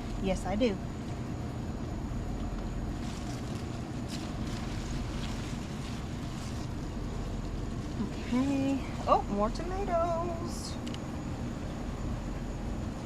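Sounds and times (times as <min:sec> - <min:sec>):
rustling garden plants: 0:02.5 - 0:10.7.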